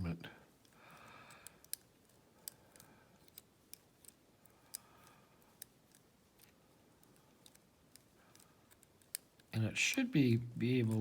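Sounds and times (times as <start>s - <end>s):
lock pick metallic clicks: 0.6s - 9.5s.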